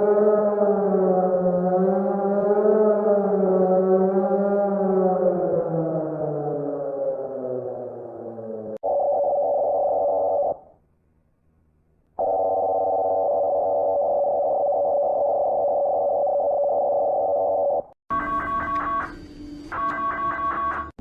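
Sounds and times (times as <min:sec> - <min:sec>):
falling multi-pitched tone: 0:00.0 - 0:08.8
steady electronic alarm tone: 0:12.2 - 0:20.9.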